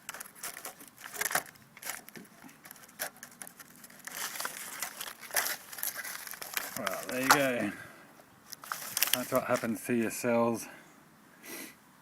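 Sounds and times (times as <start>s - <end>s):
metal sheets crinkling: 0.0s - 7.6s, 8.5s - 9.8s.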